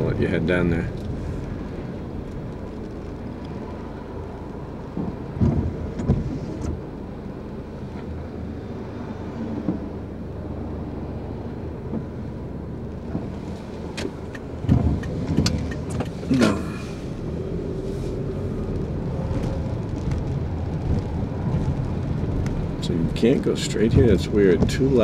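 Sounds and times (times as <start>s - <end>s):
car engine and tyres rumbling: 0.0s - 25.0s
short thumps: 13.1s - 16.9s.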